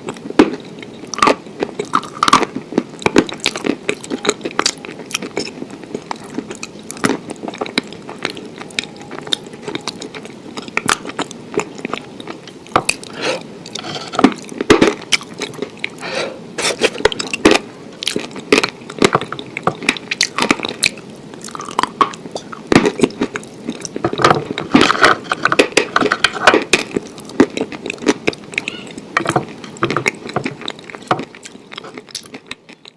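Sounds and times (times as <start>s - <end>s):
crunchy chewing of food: 0.0s - 32.9s.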